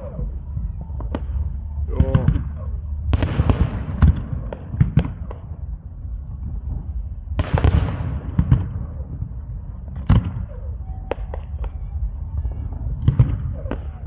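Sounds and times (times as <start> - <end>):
fireworks bangs: 0.0 - 14.0
firework burst crackling: 6.4 - 11.8.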